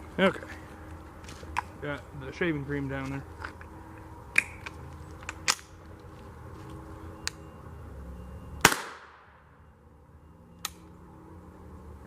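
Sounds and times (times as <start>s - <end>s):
rifle shots cracking: 8.6s - 9.3s.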